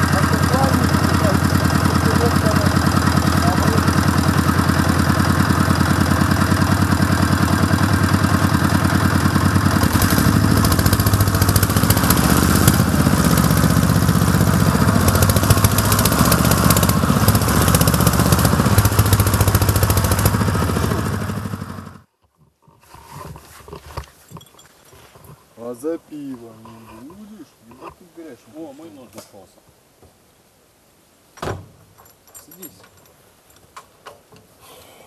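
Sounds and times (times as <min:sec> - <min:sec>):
quad bike engine running: 0:00.0 - 0:22.1.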